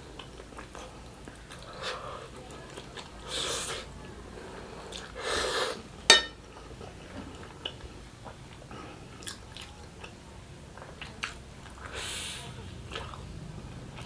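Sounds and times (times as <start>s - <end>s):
utensil clinking against dish: 6.1s - 6.4s.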